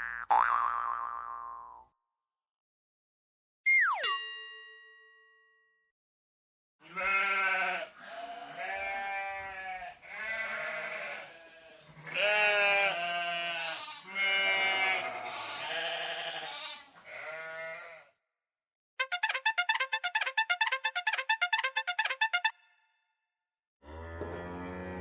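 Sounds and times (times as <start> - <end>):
goat bleating: 6.8 - 18.1.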